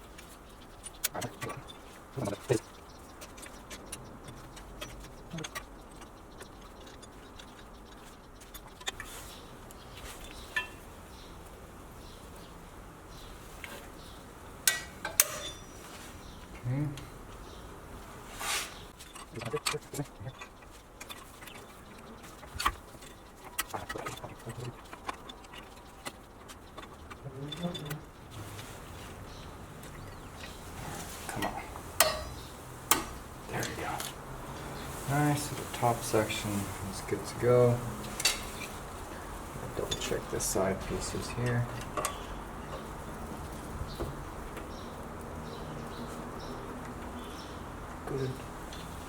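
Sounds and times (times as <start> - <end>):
ringing metal clink: 14.7 - 15.8.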